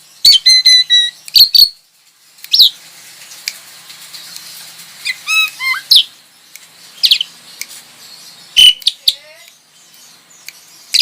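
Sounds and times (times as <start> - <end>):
bird chirps: 0.0 - 1.8, 4.1 - 11.0
starlings whistling calls: 4.3 - 11.0.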